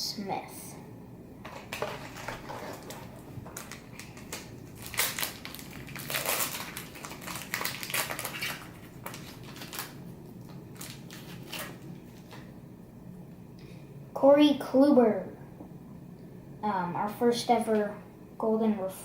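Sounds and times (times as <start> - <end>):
wrapper tearing and crinkling: 1.4 - 12.4.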